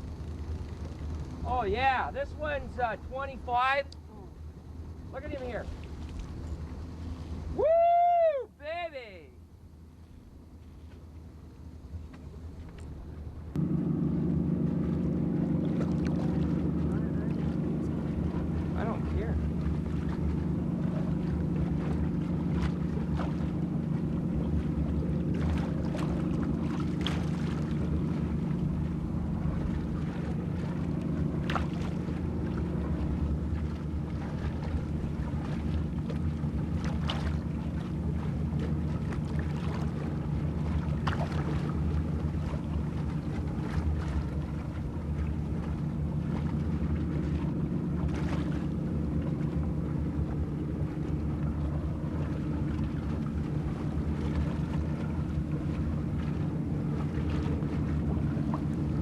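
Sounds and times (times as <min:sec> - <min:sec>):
boat motor idling: 0:00.0 - 0:59.0.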